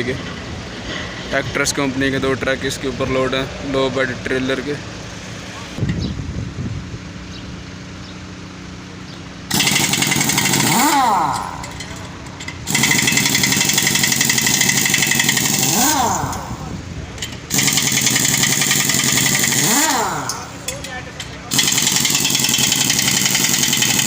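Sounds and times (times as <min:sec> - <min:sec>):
impact wrench rattling: 0:09.5 - 0:24.0.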